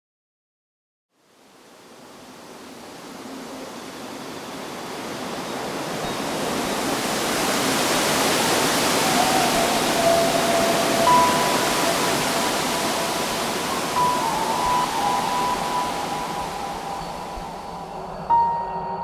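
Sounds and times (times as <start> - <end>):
heavy rain hissing: 1.4 - 18.4.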